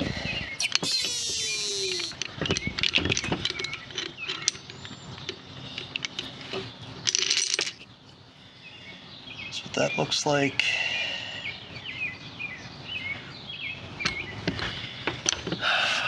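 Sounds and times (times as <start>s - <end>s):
metal tools clicking and knocking: 1.9s - 7.9s.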